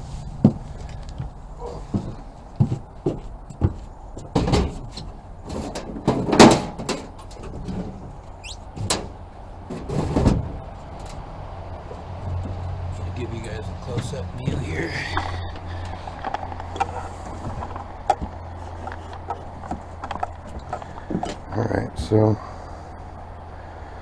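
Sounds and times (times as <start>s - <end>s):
steady low hum: 0.0s - 24.0s
short squeak: 8.4s - 8.7s.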